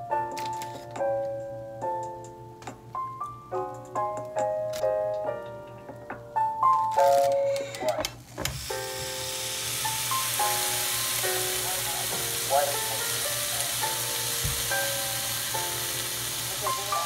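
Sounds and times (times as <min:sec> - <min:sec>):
soft background music: 0:00.0 - 0:17.0
food sizzling: 0:08.2 - 0:17.0.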